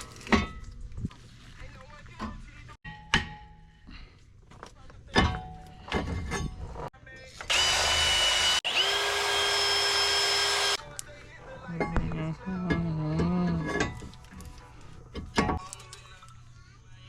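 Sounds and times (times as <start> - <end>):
power tool whining: 7.4 - 10.8.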